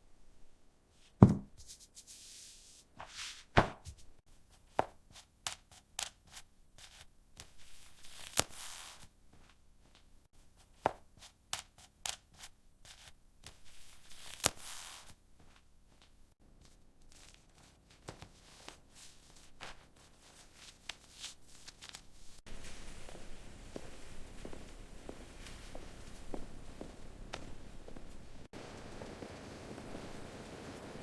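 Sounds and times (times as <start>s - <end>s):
knocks of hard objects: 1.2s - 1.6s
short hissy rustles: 18.4s - 31.0s.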